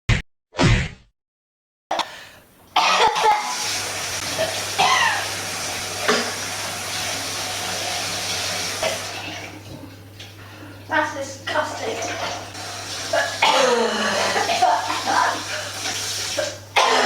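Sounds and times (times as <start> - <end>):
woman coughing and retching: 2.8 - 3.5, 4.8 - 5.2, 13.1 - 15.3, 16.4 - 17.0.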